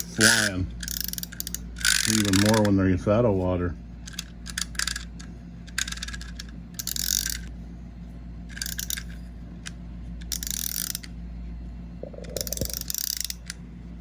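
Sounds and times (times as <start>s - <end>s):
wind-up toy clockwork whirring: 0.0s - 2.7s, 4.0s - 7.5s, 8.5s - 11.1s, 12.4s - 13.6s.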